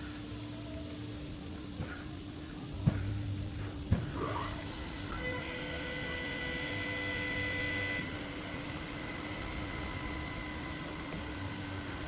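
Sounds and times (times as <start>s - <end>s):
machine whine with held tones: 3.2s - 12.0s.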